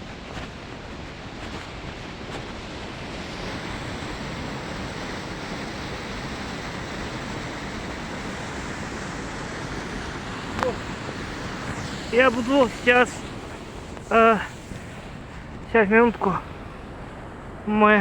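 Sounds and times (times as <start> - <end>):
waterfall rushing: 7.9 - 18.0.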